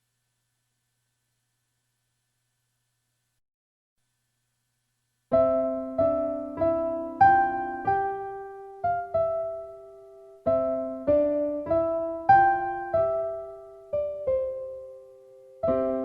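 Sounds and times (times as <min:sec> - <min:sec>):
slow solo piano melody: 0:05.3 - 0:16.0.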